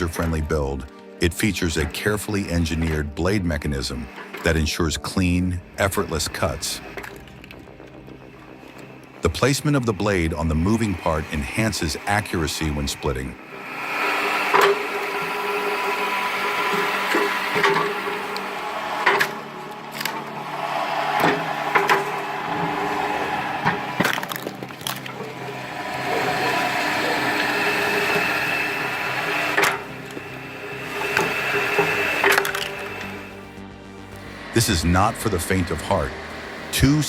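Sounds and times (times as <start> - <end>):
log splitter humming: 0.0 - 37.0
wood cracking and splitting: 23.6 - 26.6.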